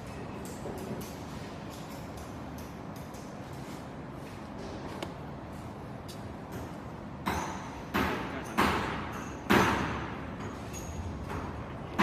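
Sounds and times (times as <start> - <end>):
sharp knocks: 6.5 - 10.2.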